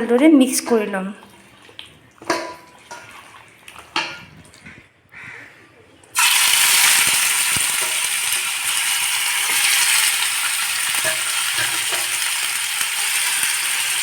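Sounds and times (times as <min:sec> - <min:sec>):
faint stirring knocks: 0:02.2 - 0:04.8, 0:11.0 - 0:12.2
chicken sizzling in oil: 0:06.2 - 0:14.0.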